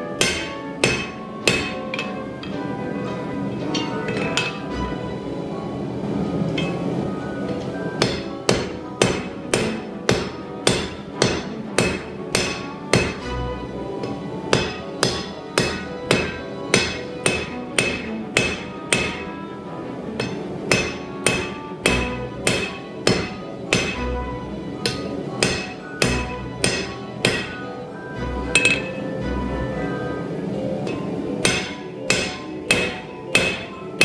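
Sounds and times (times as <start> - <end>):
hammer striking steel on anvil: 0.1 - 5.4, 6.5 - 19.5, 20.2 - 30.1, 30.8 - 34.0.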